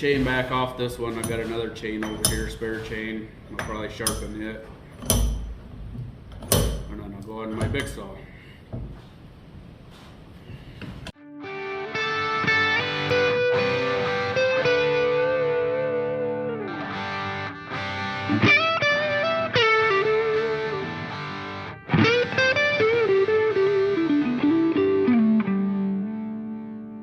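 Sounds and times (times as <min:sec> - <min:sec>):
distorted electric guitar lead: 0:11.2 - 0:27.0.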